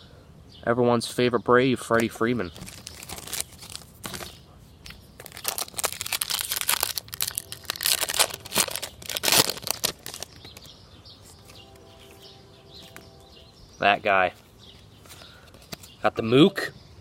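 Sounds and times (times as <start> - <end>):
plastic wrapper crinkling: 1.9 - 10.7.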